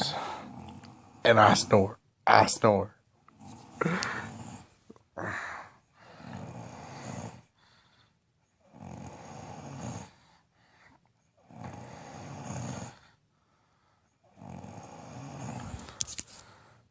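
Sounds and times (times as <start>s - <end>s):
loud snoring: 0.0s - 1.8s, 3.3s - 10.5s, 11.4s - 13.2s, 14.2s - 16.0s.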